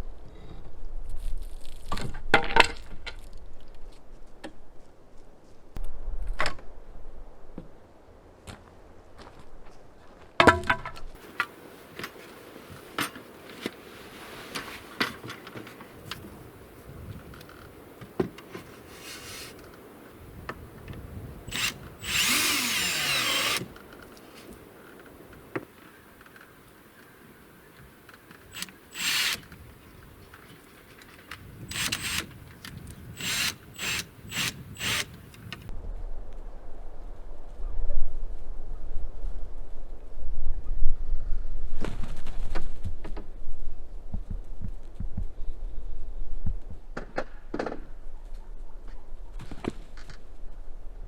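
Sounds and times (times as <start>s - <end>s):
tool rasping wood: 19.0s - 19.6s, 21.5s - 23.8s.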